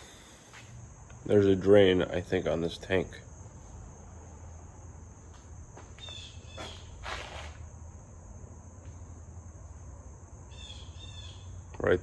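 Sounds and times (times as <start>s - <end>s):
crickets chirring: 0.0s - 12.0s
rustle or scrape: 6.6s - 7.6s.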